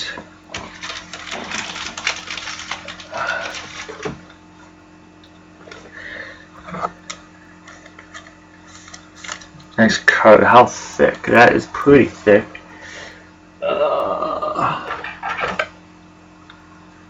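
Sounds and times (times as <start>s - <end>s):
card sleeves clicking and rustling: 0.5s - 4.1s.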